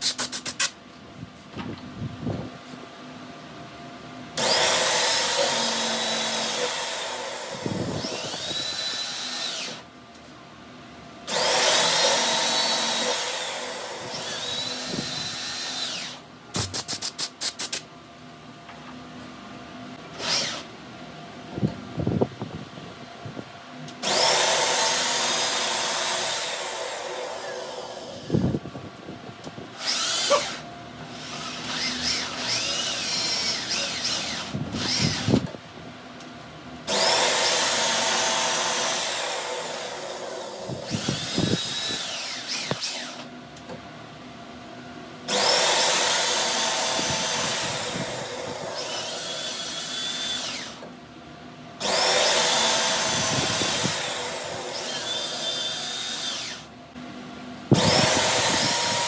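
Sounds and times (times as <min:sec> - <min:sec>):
power tool whining on metal: 0:04.4 - 0:09.9, 0:11.3 - 0:16.2, 0:20.1 - 0:20.7, 0:24.0 - 0:28.6, 0:29.8 - 0:35.6, 0:36.9 - 0:43.3, 0:45.3 - 0:51.0, 0:51.8 - 0:56.7, 0:57.7 - 0:59.0.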